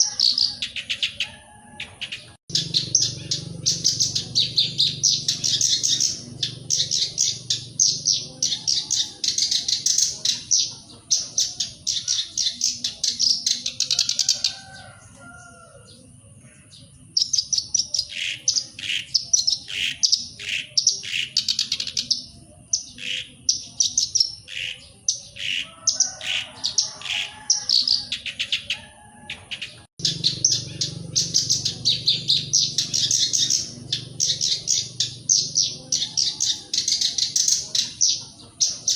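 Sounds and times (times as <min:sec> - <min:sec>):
bird singing chattering runs: 0:00.8 - 0:14.0, 0:28.1 - 0:38.9.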